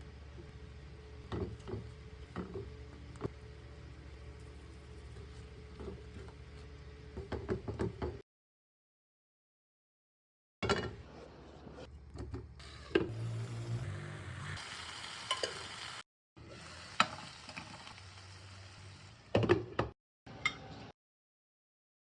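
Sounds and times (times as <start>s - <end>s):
food sizzling in a frying pan: 12.6s - 19.3s.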